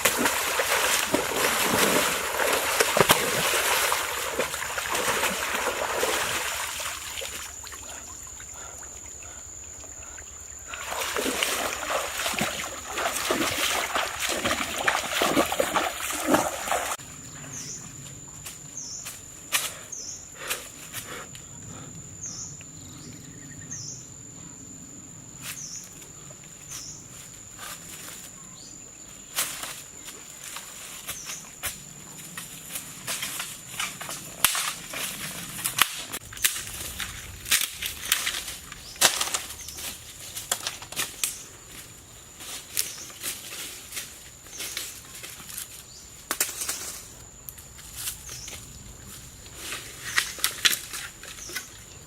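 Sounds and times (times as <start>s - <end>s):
water splashing and sloshing: 0.0s - 17.0s, 32.0s - 45.7s, 48.0s - 52.0s.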